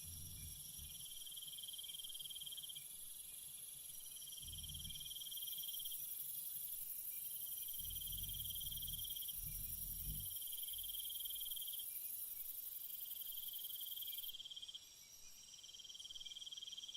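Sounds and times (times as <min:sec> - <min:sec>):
insect pulsing trill: 0:00.0 - 0:14.6
insects high buzz: 0:00.0 - 0:16.9.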